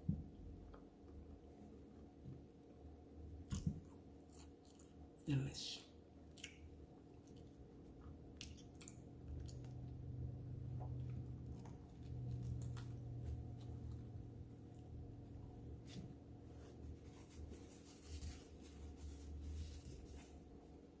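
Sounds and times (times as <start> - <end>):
low steady hum: 0.0 - 21.0
chewing with wet mouth clicks: 3.5 - 5.0, 6.2 - 14.0.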